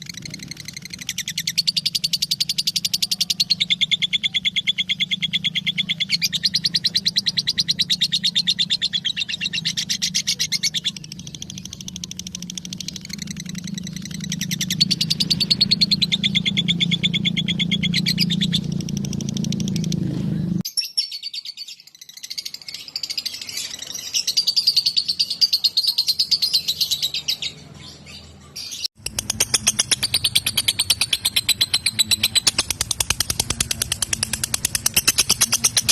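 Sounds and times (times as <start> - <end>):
lovebird chattering trill: 0.0 - 20.0, 29.0 - 35.9
steady low hum: 29.0 - 35.9.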